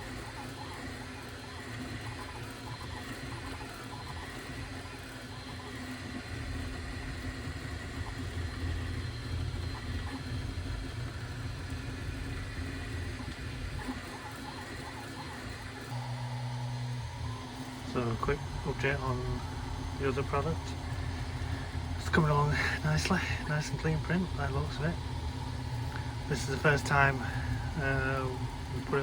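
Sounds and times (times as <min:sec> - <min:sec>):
steady tones: 0:07.0 - 0:29.0.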